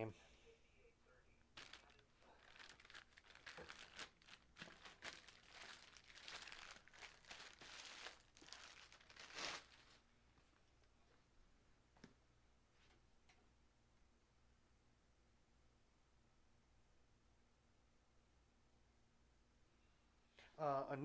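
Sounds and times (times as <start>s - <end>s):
packaging crinkling and rustling: 1.5s - 10.1s.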